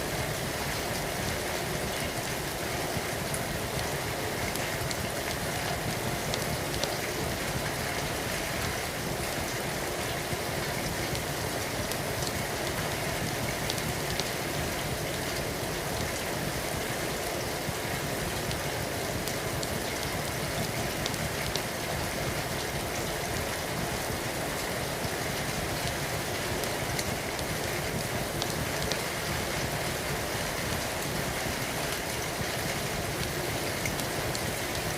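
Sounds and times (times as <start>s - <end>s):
steady rain falling: 0.0s - 34.9s.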